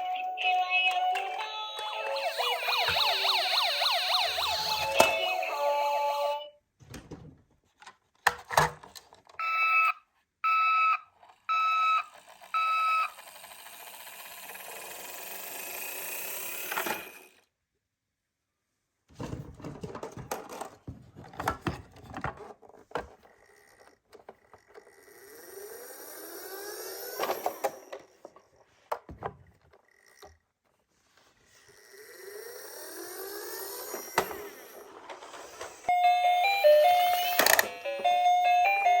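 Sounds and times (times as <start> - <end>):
toy car whirring: 0.0 - 6.5, 11.0 - 17.5, 22.6 - 30.6, 31.2 - 39.0
toy siren beeps: 0.0 - 6.6, 9.4 - 14.0, 25.2 - 28.1, 32.5 - 34.8, 35.8 - 39.0.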